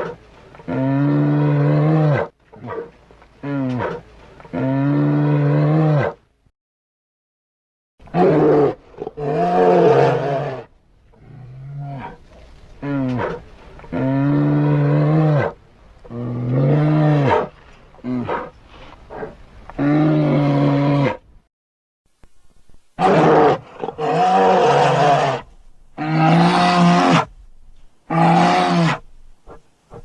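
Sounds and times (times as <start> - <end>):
bear roaring: 8.1 - 12.2, 23.0 - 27.3, 28.1 - 30.0.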